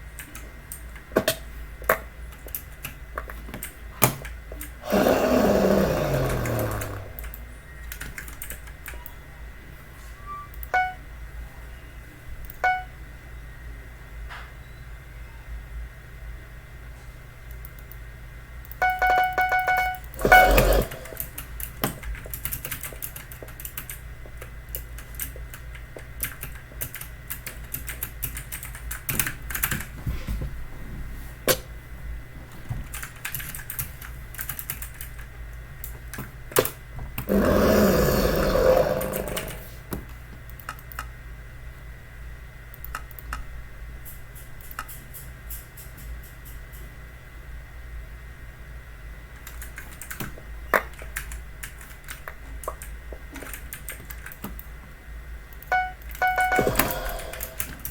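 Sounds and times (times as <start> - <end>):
short electronic tone: 18.8 - 21.0, 55.7 - 57.6
loud noise bursts: 19.6 - 21.2.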